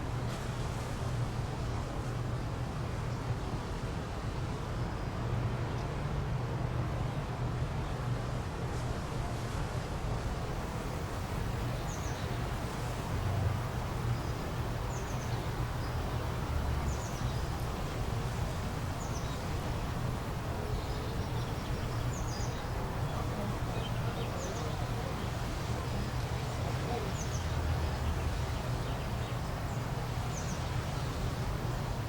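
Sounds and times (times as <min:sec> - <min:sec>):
bird chirping: 0:20.6 - 0:24.8.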